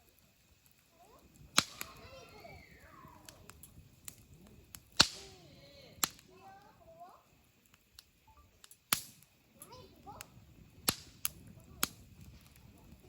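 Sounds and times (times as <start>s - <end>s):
faint voices: 0.0s - 8.6s, 9.3s - 13.0s
campfire wood crackling: 0.0s - 13.0s
sharp loud fire pops: 1.4s - 6.3s, 8.9s - 9.3s, 10.2s - 13.0s.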